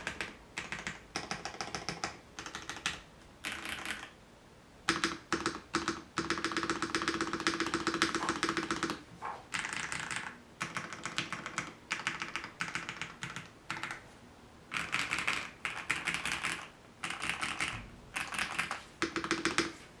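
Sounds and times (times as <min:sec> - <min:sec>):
fast typing on mechanical keyboard: 0:00.0 - 0:04.1, 0:04.9 - 0:14.0, 0:14.7 - 0:19.8.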